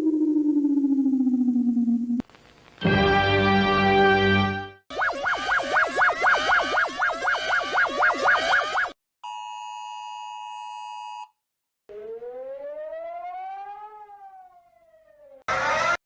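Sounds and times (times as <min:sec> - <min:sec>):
rising and falling siren tone: 0:04.9 - 0:08.9, 0:11.9 - 0:16.0
fast electronic warble: 0:04.9 - 0:09.0
loud alarm: 0:04.9 - 0:09.4, 0:15.5 - 0:16.0.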